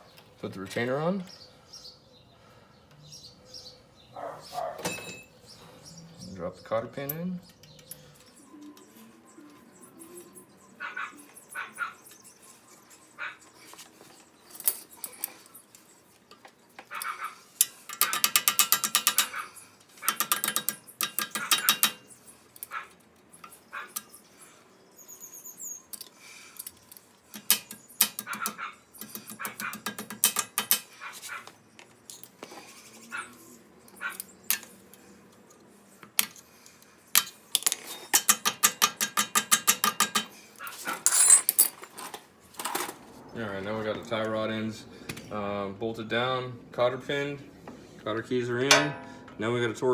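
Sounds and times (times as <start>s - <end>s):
hand ratchet clicking: 17.6s - 19.4s, 20.0s - 22.0s.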